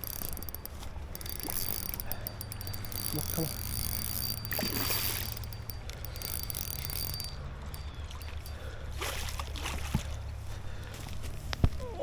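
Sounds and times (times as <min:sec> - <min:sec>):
fishing reel ratcheting: 0:00.0 - 0:08.6.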